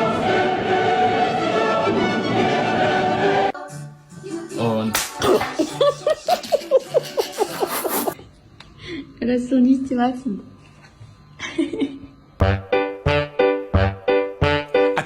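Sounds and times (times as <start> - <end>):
choral music: 0.0 - 8.2.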